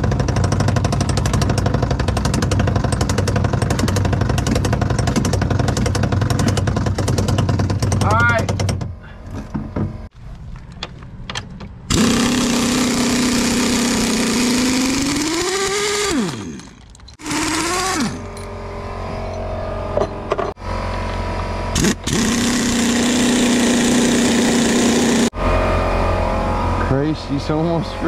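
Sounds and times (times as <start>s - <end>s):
power tool motor humming: 11.9s - 19.3s, 21.7s - 25.4s.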